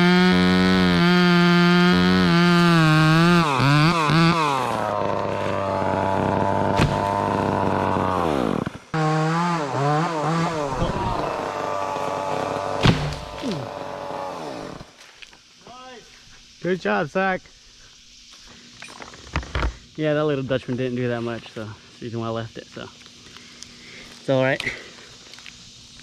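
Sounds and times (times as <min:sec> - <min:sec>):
wood cracking: 0:00.0 - 0:08.8, 0:09.4 - 0:14.9
chainsaw revving and cutting: 0:00.0 - 0:15.0.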